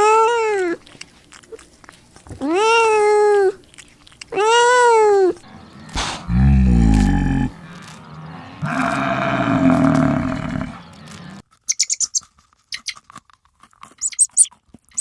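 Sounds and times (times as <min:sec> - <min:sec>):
rough low animal call: 0:05.4 - 0:11.4
tiny high-pitched squeaks: 0:11.0 - 0:13.2, 0:13.8 - 0:15.0.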